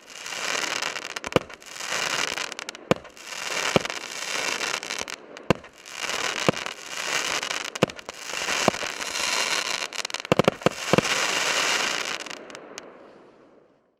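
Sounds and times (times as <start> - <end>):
firework bangs: 0.0 - 12.9
firework crackling: 0.0 - 12.9.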